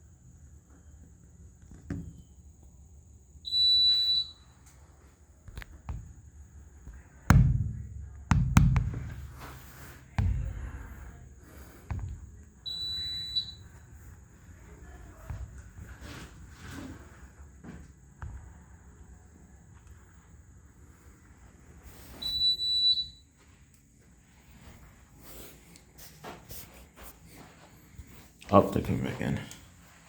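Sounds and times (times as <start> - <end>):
fire alarm beeps: 3.4 - 4.7, 12.6 - 13.9, 22.2 - 23.4
heavy thumps: 6.9 - 12.4.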